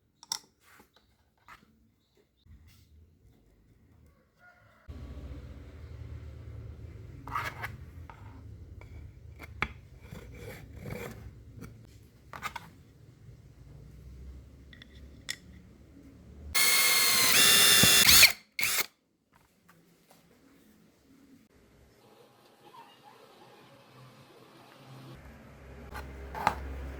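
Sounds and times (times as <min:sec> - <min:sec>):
high-pitched power tool whine: 0:16.6 - 0:18.9
power tool motor hum: 0:16.6 - 0:18.9.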